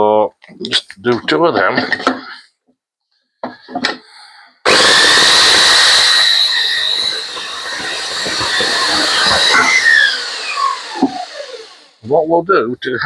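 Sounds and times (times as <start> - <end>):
electric saw whining: 4.7 - 12.0.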